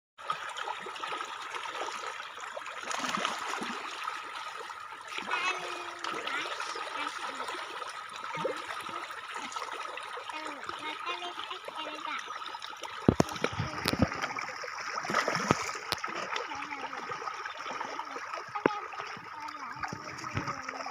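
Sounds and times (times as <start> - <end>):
water trickling and splashing: 0.2 - 20.9.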